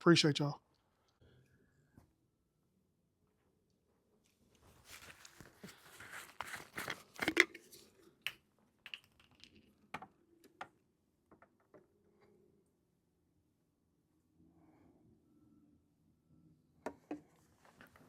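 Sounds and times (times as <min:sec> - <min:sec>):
rustling and crinkling: 0:04.2 - 0:08.2.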